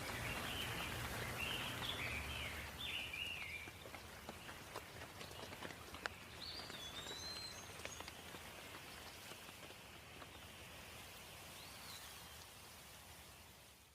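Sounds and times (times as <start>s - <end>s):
raindrops ticking: 0.0s - 11.1s
steady rain: 0.0s - 13.9s.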